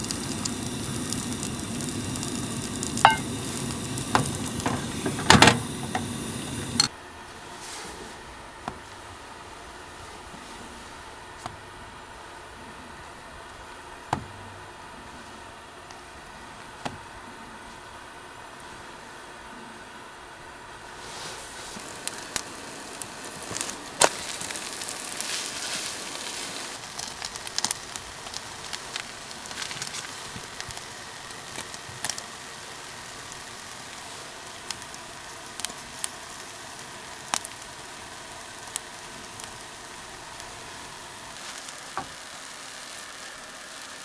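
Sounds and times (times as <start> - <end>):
food sizzling in a pan: 0.0 - 6.9, 21.0 - 44.0
sharp pops and crackles: 0.0 - 6.9, 21.1 - 43.0.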